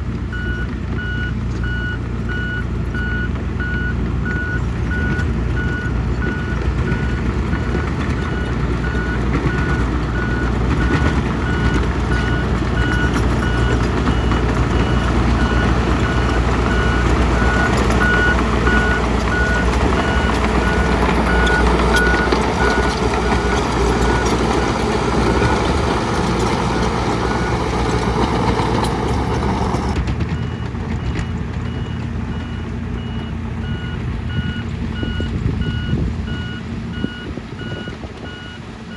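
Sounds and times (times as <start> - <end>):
diesel engine under load: 0.0 - 38.9
reversing alarm beeping: 0.3 - 38.7
rushing machine noise: 6.8 - 30.5.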